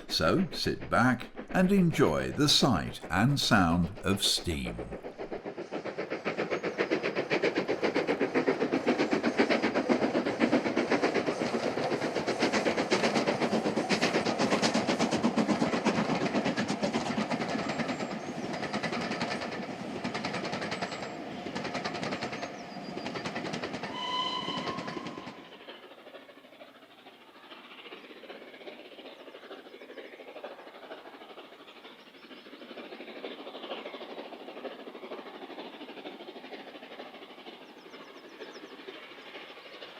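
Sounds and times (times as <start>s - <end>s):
steam train clattering past: 0.0s - 39.9s
train whistle: 23.9s - 25.5s.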